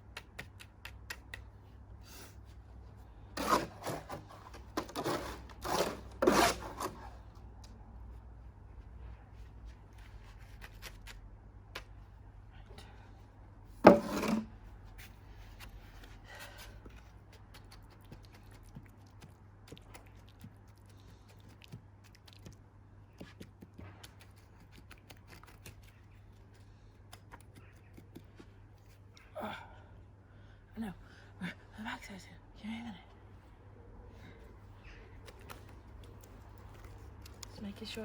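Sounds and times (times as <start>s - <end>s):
cement scraping and tapping: 3.4s - 7.0s, 13.8s - 14.5s.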